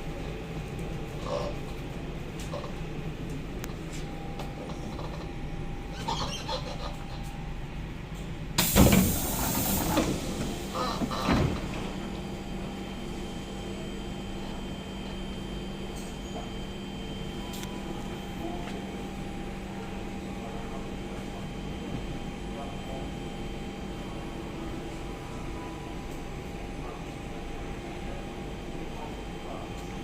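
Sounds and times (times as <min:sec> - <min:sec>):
train running noise: 0:06.6 - 0:30.0
air hiss with thump: 0:08.6 - 0:11.6.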